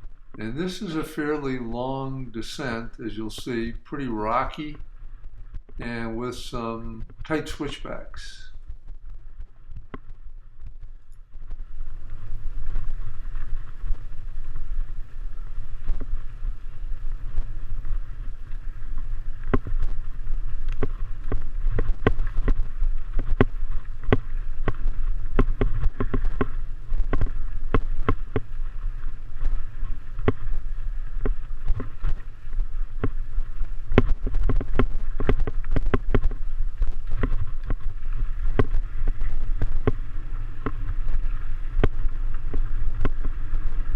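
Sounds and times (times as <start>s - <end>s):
wind on microphone: 0.0s - 43.9s
bike rattling over rocks: 11.8s - 43.9s.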